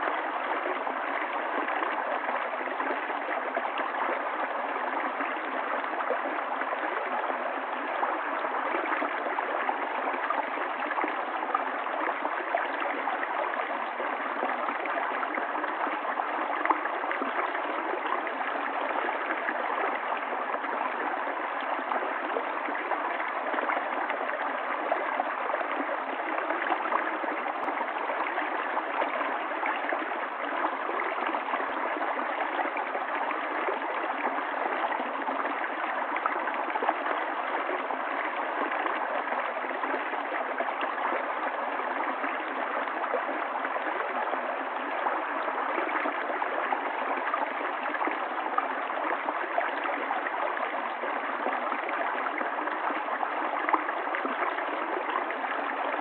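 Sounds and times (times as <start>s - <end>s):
stream gurgling over rocks: 0.0s - 56.0s.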